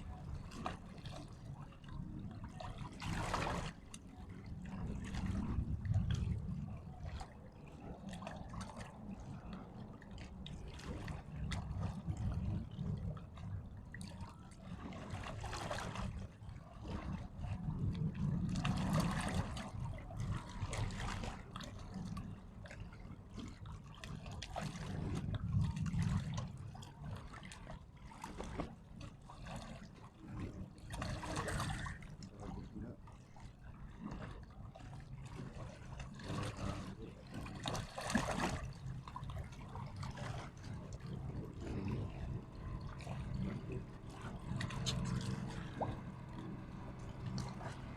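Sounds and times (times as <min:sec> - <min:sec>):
water splashing and trickling: 0:00.0 - 0:47.9
low rumble: 0:04.3 - 0:07.9, 0:36.6 - 0:47.9.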